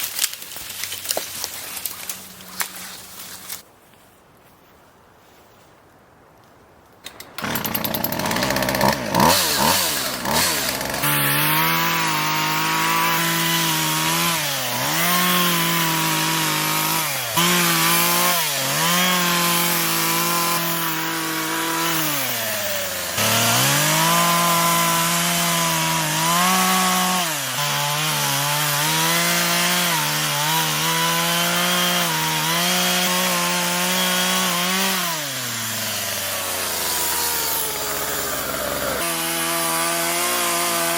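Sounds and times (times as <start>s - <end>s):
chainsaw cutting wood: 7.0s - 40.9s.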